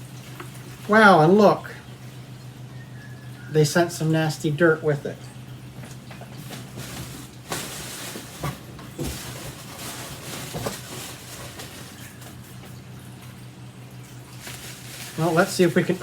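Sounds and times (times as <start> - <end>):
steady low hum: 0.0 - 16.0
knocks and rustles: 5.8 - 12.8.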